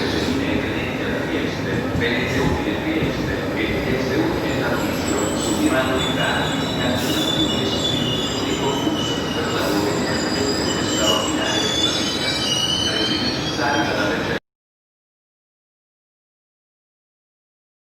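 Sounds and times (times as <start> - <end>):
train rumble: 0.0 - 14.4
train wheels squealing on rails: 4.2 - 14.4.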